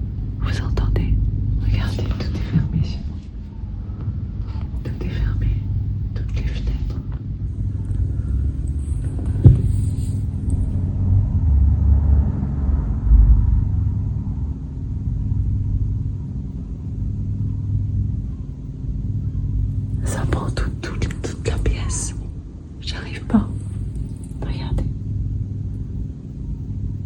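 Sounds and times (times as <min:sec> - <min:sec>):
engine rumbling: 0:00.0 - 0:27.0
faint constant hum: 0:00.0 - 0:27.0
sharp knock: 0:09.2 - 0:10.1.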